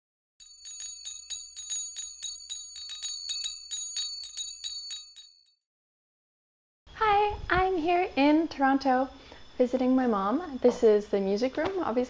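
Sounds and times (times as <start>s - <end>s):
small bells ringing: 0.4s - 5.6s.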